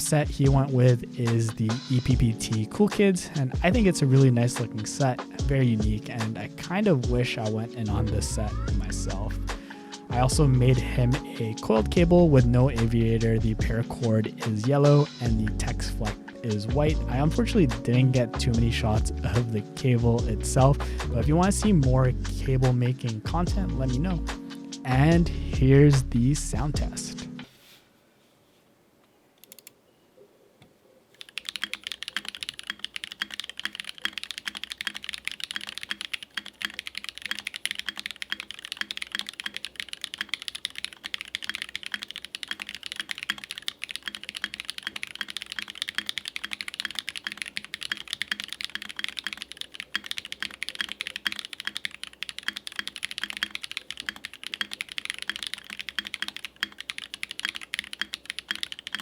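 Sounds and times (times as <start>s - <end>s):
fast typing on mechanical keyboard: 31.2s - 59.0s.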